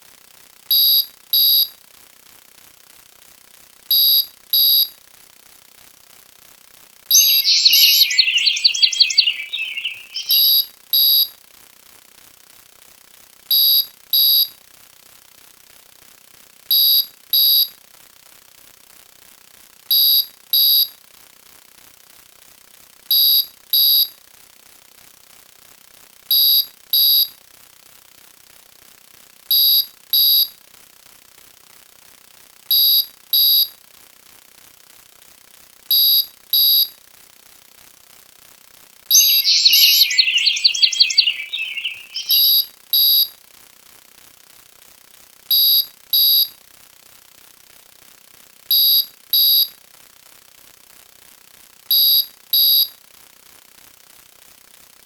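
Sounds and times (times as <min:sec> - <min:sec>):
short high-pitched electronic beeps: 0:07.1 - 0:10.5, 0:39.1 - 0:42.6.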